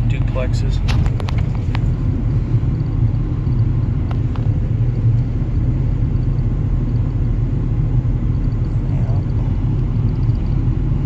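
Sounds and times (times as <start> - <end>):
engine and road noise rumble: 0.0 - 11.0.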